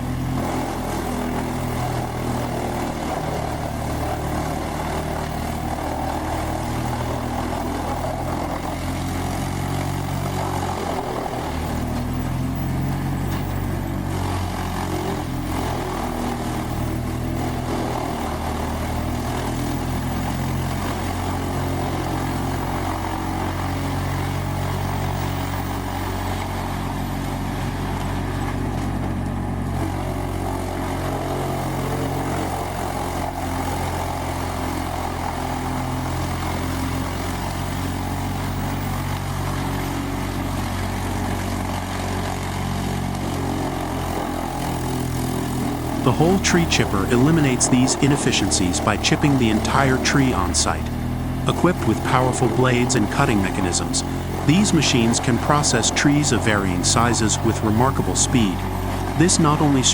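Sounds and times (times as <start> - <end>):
tree chipper engine droning: 0.0 - 59.9.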